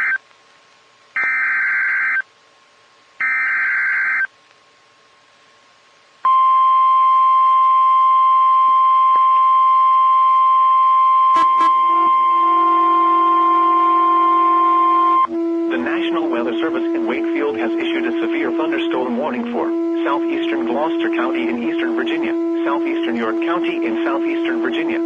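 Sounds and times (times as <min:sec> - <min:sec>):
steady warning alarm tone: 0:03.2 - 0:04.3, 0:06.3 - 0:25.0
buzzing data bursts: 0:11.4 - 0:25.0.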